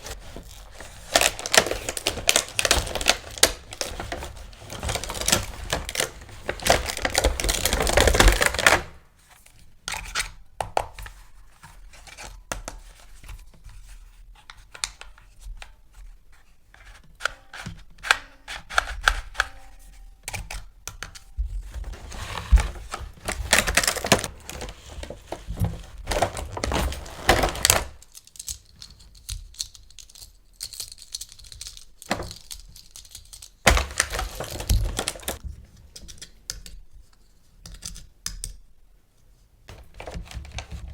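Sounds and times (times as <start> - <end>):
packaging tearing and rustling: 0.0 - 9.0, 21.7 - 28.8, 30.8 - 35.4.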